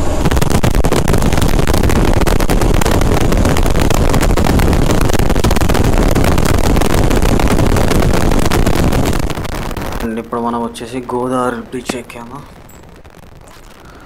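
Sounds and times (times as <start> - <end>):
motorcycle engine and road noise: 0.0 - 5.0
wind buffeting on microphone: 0.0 - 10.0.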